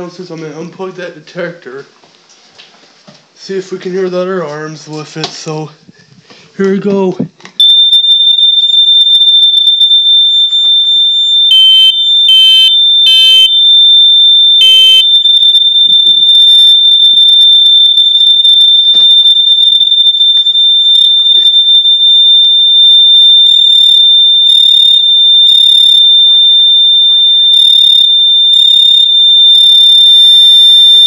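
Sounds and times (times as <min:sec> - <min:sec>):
short beeps: 0:07.6 - 0:30.0
smoke alarm high-pitched tone: 0:07.6 - 0:31.0.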